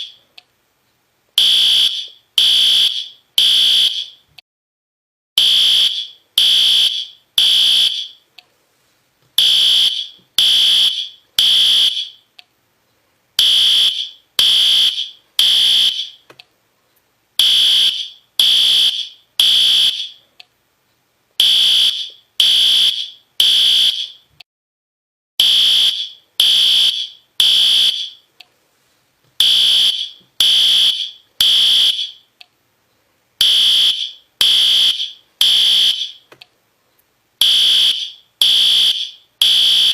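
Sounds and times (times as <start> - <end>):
high-pitched fire alarm horn: 1.4 - 4.2, 5.4 - 8.2, 9.4 - 12.2, 13.4 - 16.2, 17.4 - 20.2, 21.4 - 24.2, 25.4 - 28.2, 29.4 - 32.3, 33.4 - 36.2, 37.4 - 39.9.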